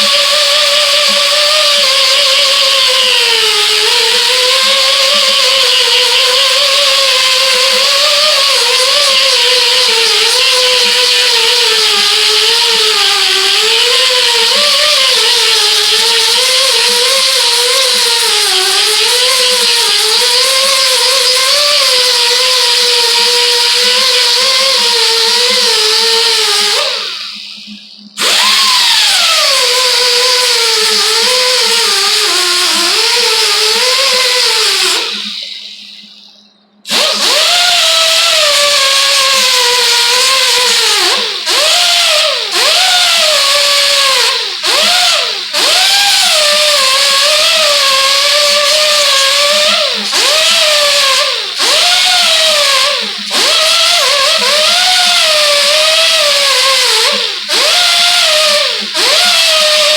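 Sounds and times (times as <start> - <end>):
power grinder grinding steel: 0.0 - 36.1, 36.9 - 59.9.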